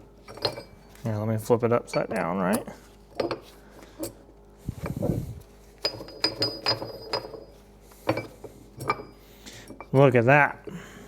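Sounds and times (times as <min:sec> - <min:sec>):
steel parts clanking: 0:00.2 - 0:01.0, 0:04.8 - 0:10.3.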